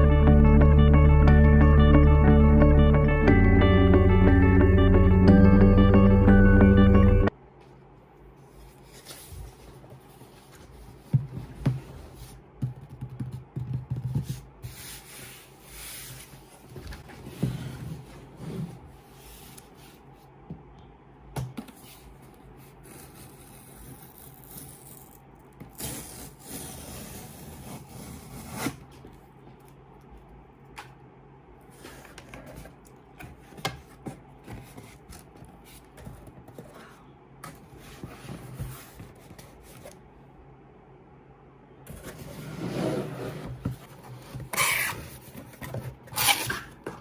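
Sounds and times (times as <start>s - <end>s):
cardboard and plastic rubbing: 31.7s - 40.0s.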